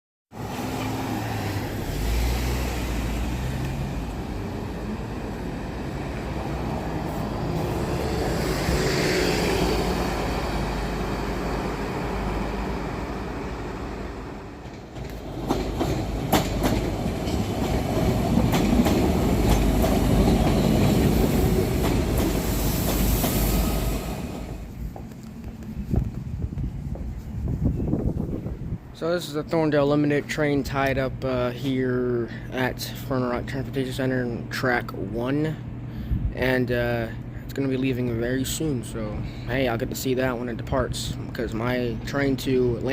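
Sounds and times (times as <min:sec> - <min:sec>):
train rumbling on rails: 0:00.4 - 0:28.9
wheels clicking over rail joints: 0:14.6 - 0:23.1.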